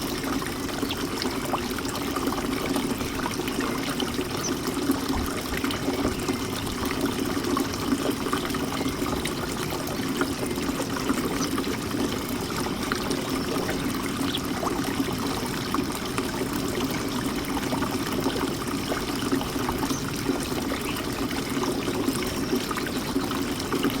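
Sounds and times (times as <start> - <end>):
fountain water trickling: 0.0 - 24.0.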